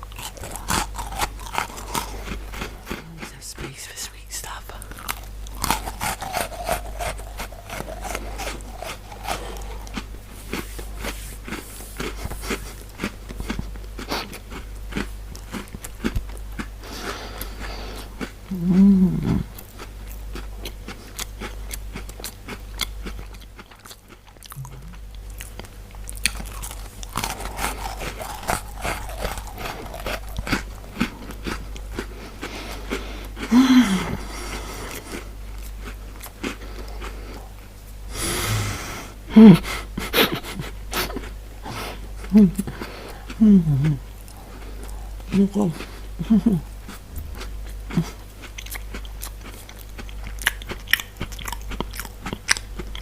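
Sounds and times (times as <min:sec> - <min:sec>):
chewing and crunching biscuits: 0:00.0 - 0:38.6, 0:39.5 - 0:53.0.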